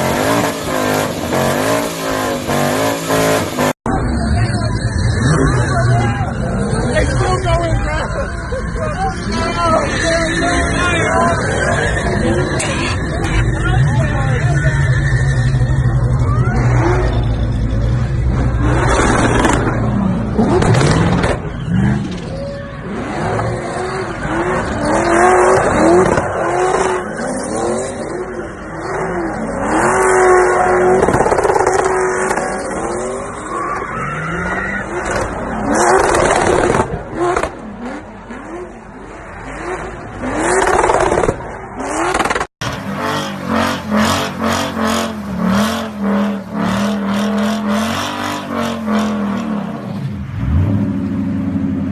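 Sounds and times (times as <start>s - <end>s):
car engine revving: 0.0s - 51.9s
tyres squealing: 0.2s - 19.3s.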